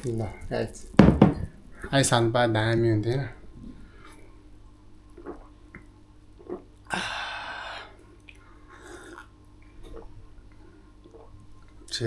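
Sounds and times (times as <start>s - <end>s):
person sipping: 3.6s - 11.9s.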